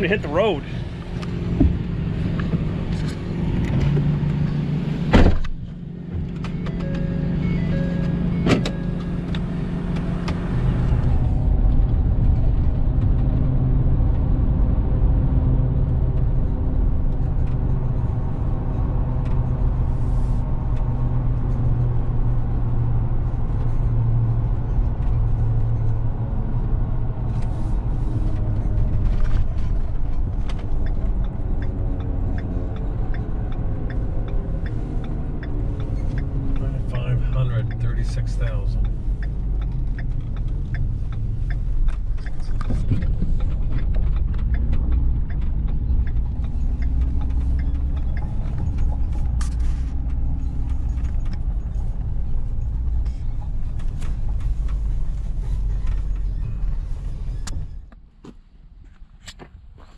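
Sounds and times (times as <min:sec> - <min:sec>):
road rumble: 0:00.0 - 0:59.9.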